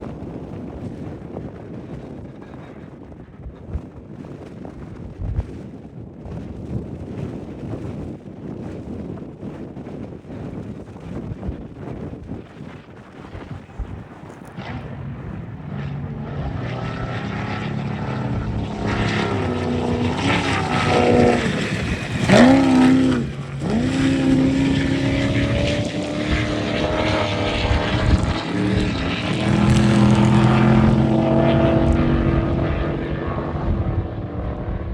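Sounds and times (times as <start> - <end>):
race car engine revving: 14.4 - 34.9.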